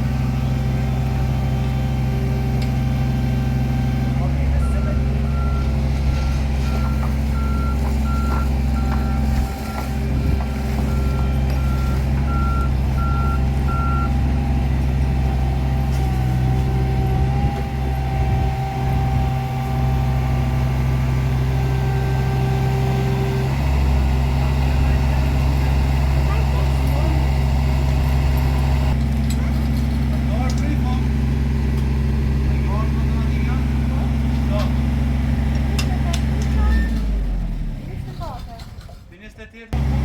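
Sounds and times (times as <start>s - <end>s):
heavy machine engine drone: 0.0s - 39.0s, 39.8s - 40.0s
reversing alarm beeps: 4.6s - 14.2s.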